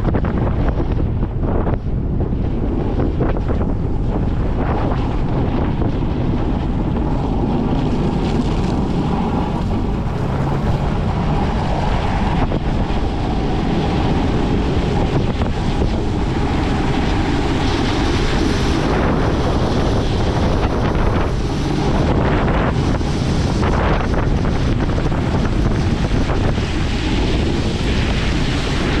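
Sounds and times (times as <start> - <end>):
wind buffeting microphone: 0.0 - 29.0
diesel truck engine running: 5.9 - 25.6.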